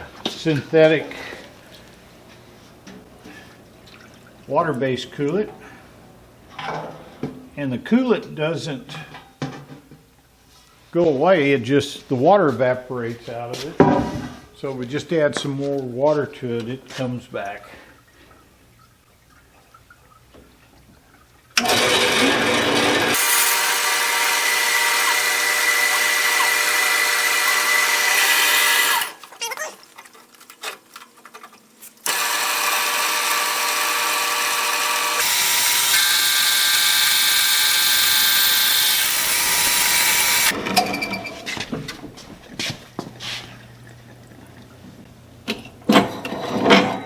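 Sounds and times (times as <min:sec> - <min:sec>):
bandsaw cutting steel: 0:21.6 - 0:29.2, 0:32.0 - 0:40.9.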